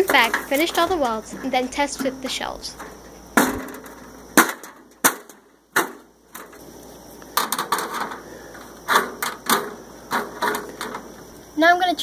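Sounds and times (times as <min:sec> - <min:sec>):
metal shelves knocking on frame: 0:00.0 - 0:06.1
metal rattle: 0:00.0 - 0:06.6, 0:07.4 - 0:11.1.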